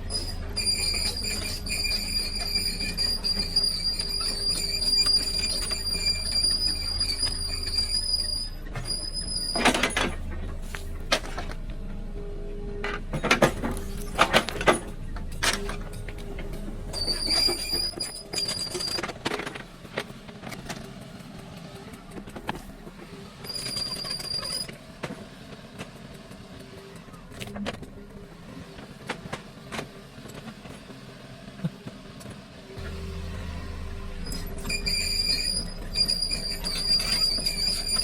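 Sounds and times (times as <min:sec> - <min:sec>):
high-pitched squeals: 0:00.0 - 0:09.8, 0:16.9 - 0:19.0, 0:32.8 - 0:38.0
excavator engine humming: 0:00.0 - 0:38.0.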